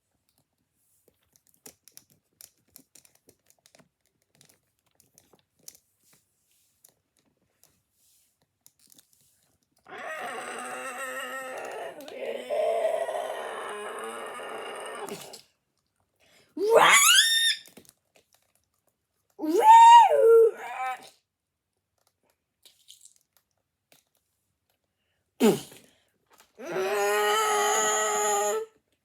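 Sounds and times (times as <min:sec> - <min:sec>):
handling clicks and crunches: 0:00.2 - 0:07.8, 0:17.6 - 0:19.4, 0:21.8 - 0:22.4
loud wavering roar: 0:09.9 - 0:15.3.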